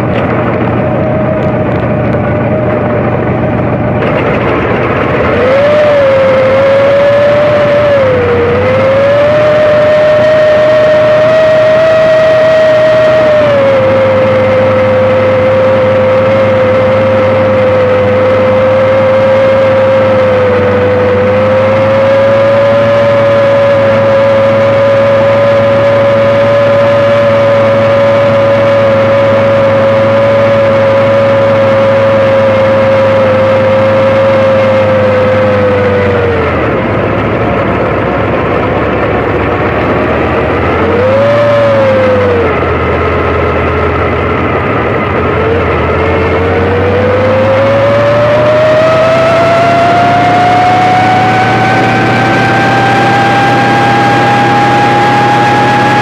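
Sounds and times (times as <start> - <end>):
helicopter engine and rotors: 0.0 - 56.0.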